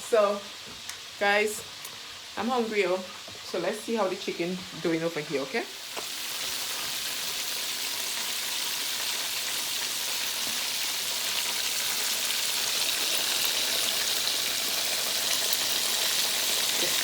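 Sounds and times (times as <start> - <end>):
chicken frying in hot oil: 0.0 - 17.0.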